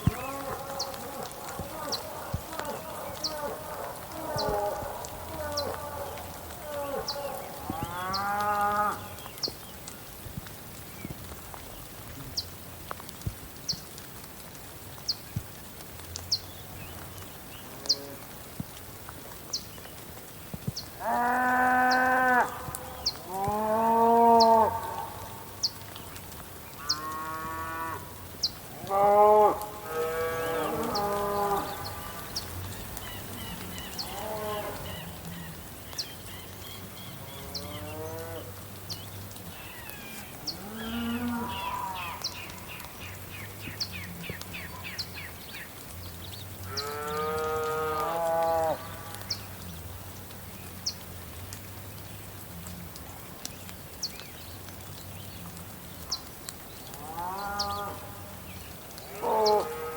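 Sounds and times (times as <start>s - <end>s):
birds chirping: 0.0s - 10.1s, 20.6s - 48.0s
soft steady rain: 0.0s - 59.9s
water drips ticking: 0.0s - 59.9s
cattle mooing: 28.8s - 32.3s.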